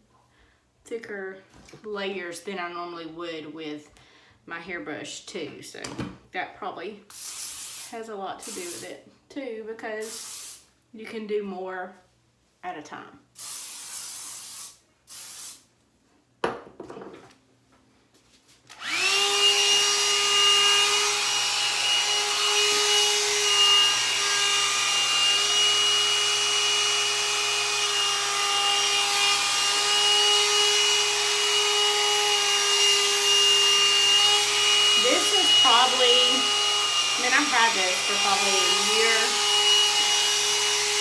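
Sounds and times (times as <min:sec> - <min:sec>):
hot-air brush motor whine: 0:18.7 - 0:41.0.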